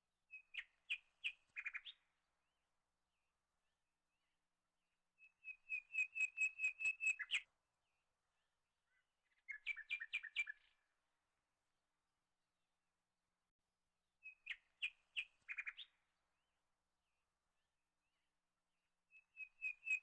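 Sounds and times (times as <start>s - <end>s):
bird chirping: 0.3s - 2.0s, 5.2s - 7.5s, 8.9s - 10.8s, 14.2s - 16.0s, 19.1s - 20.0s.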